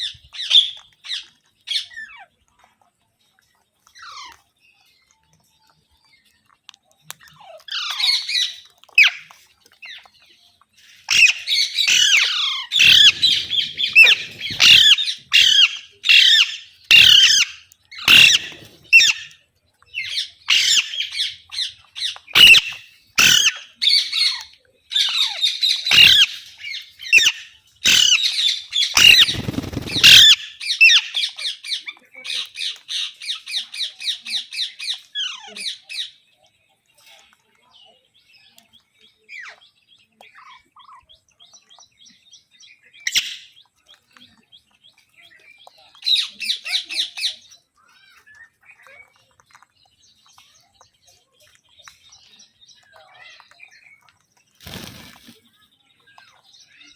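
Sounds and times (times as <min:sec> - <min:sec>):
parakeet squawking: 0:11.1 - 0:19.2, 0:22.3 - 0:23.6, 0:25.9 - 0:26.4, 0:27.2 - 0:31.1.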